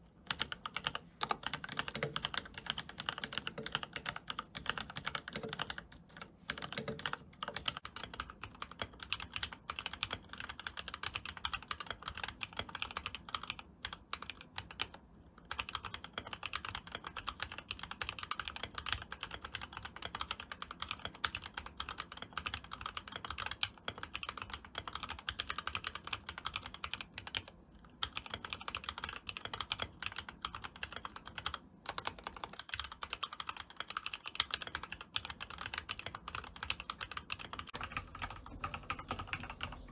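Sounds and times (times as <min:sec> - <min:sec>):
mechanical keyboard typing: 0:00.2 - 0:39.9.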